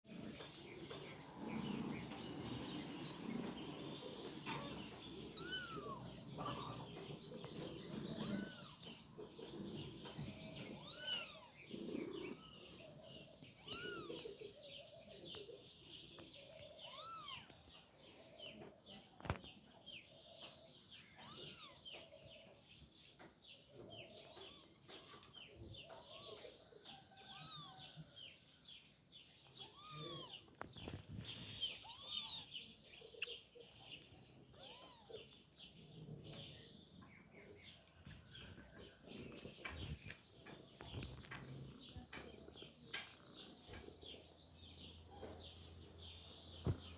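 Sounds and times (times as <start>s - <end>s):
kitten meowing: 5.4s - 6.0s, 8.2s - 8.8s, 10.8s - 11.6s, 13.6s - 14.3s, 16.9s - 17.5s, 21.2s - 21.8s, 24.2s - 24.7s, 27.3s - 27.8s, 29.6s - 30.4s, 31.8s - 32.5s, 34.5s - 35.2s.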